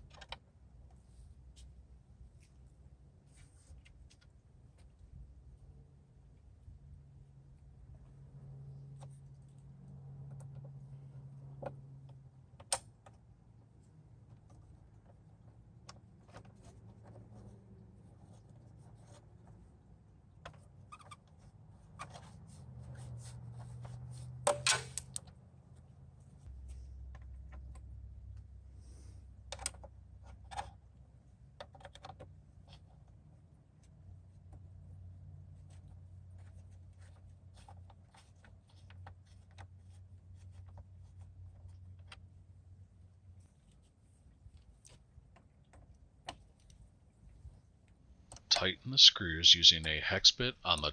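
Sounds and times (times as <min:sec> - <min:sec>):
metal parts and tools clicking: 0:24.5 - 0:25.3
low steady hum: 0:32.4 - 0:50.9.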